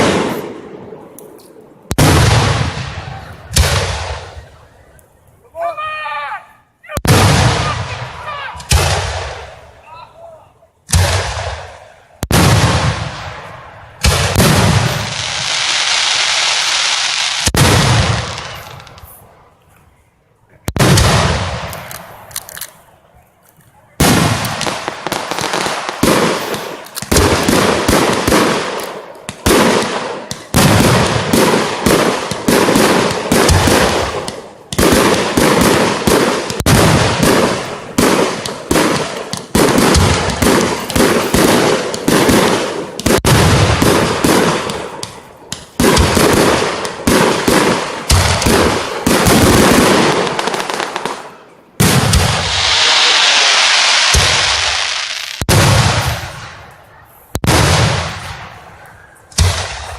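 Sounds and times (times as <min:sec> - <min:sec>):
fireworks bangs: 0:00.0 - 0:05.0, 0:06.9 - 0:10.0, 0:10.8 - 0:19.6, 0:20.6 - 0:23.0, 0:23.8 - 0:59.9
fireworks hissing crackle: 0:14.0 - 0:20.0, 0:23.4 - 0:51.4, 0:52.1 - 0:59.9.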